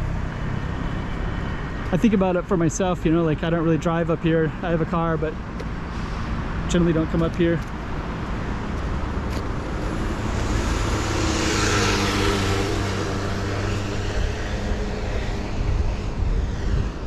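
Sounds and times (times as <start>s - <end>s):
car driving past: 8.4s - 15.7s.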